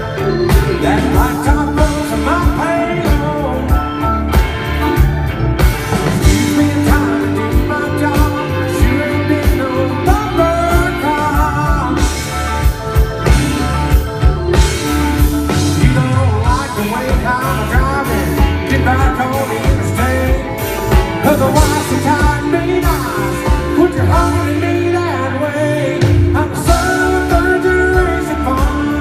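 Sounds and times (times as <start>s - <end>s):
person singing lead vocal: 0.0s - 4.9s, 5.9s - 29.0s
bass and electric guitar: 0.0s - 29.0s
drum beat: 4.4s - 24.5s.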